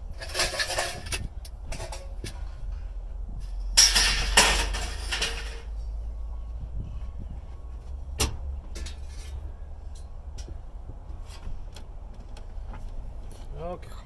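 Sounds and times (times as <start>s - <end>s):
steady low rumble: 0.0s - 14.0s
scrap metal knocks: 0.1s - 5.8s
sharp metal clank: 3.8s - 5.7s.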